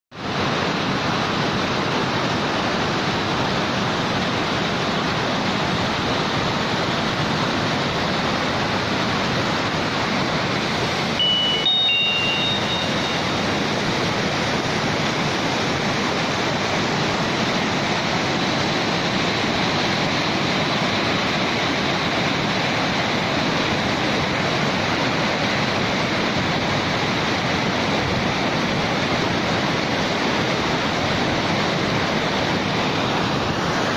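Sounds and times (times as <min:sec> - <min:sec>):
floodwater rushing: 0:00.2 - 0:33.9
brief high tones: 0:11.2 - 0:13.6.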